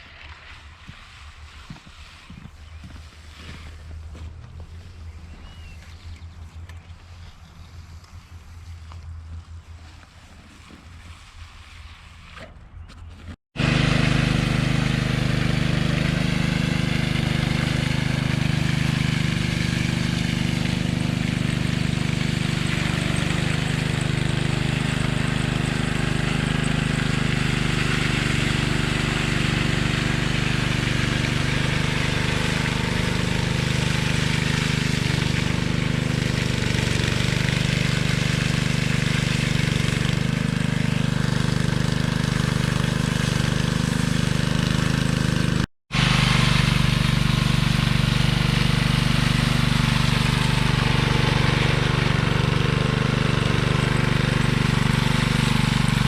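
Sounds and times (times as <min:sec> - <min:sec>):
engine running steadily: 0:12.8 - 0:56.0.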